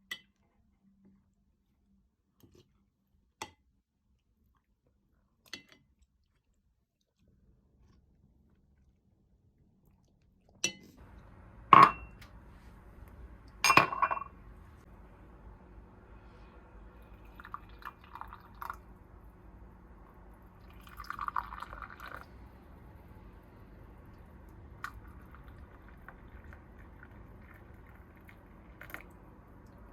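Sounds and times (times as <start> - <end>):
low steady hum: 7.3 - 29.9
glassware clinking: 11.7 - 12.3, 13.6 - 14.4.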